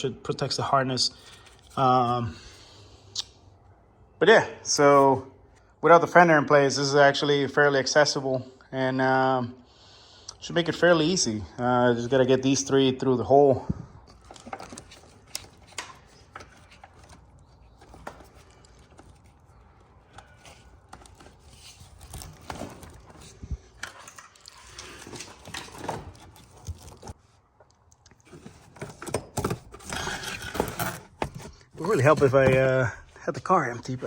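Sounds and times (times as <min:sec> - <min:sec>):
wires and plastic rustling: 0:13.6 - 0:34.0.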